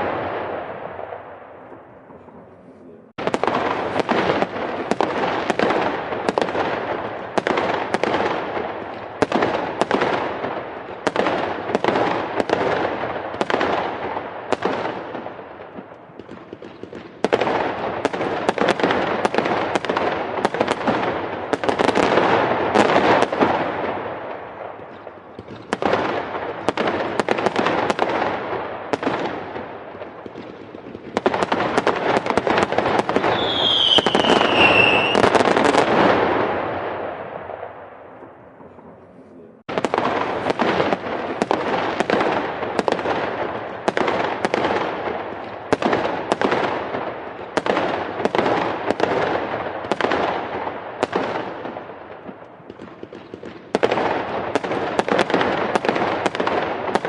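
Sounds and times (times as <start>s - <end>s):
fireworks bangs and crackling pops: 0.0s - 57.0s
firework whistle falling in pitch: 33.2s - 35.3s.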